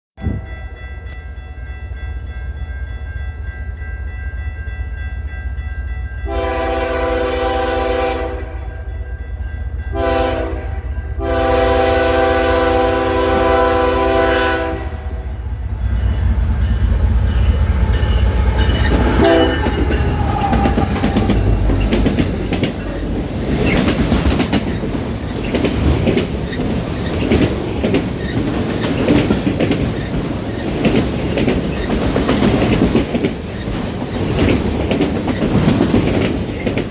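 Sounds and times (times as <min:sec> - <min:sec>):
train rumble: 0:00.2 - 0:36.9
train air horn blasts: 0:06.2 - 0:09.0, 0:09.9 - 0:15.4, 0:18.9 - 0:21.9
wheels clicking over rail joints: 0:16.6 - 0:36.9.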